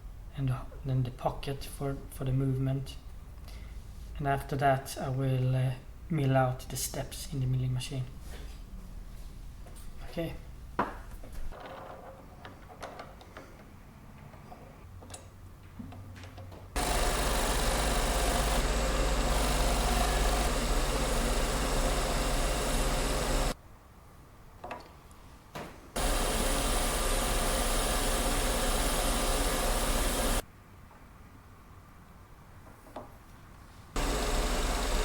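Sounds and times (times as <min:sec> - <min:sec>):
lathe machine hum: 0:16.8 - 0:23.6, 0:26.0 - 0:30.4, 0:34.0 - 0:35.0.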